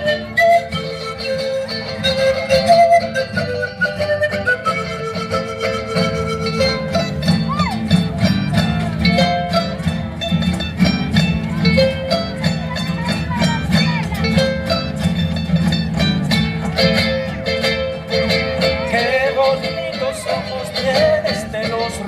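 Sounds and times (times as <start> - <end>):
instrumental band music: 0.0 - 22.0.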